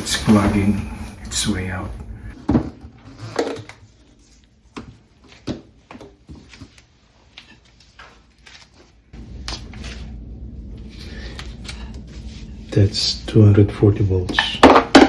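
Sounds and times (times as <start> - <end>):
steady low hum: 0.0 - 2.4, 9.0 - 14.7.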